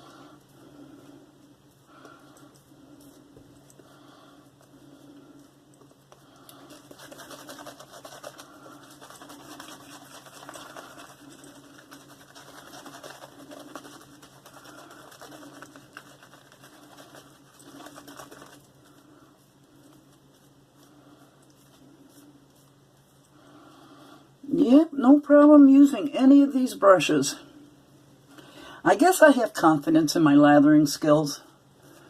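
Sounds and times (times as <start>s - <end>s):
shaving brush swishing lather: 6.5s - 23.2s.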